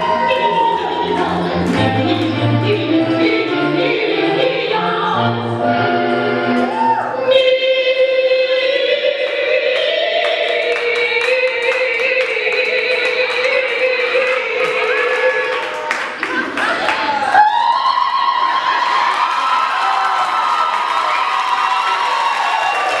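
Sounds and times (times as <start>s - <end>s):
gospel style song: 0.0s - 15.9s.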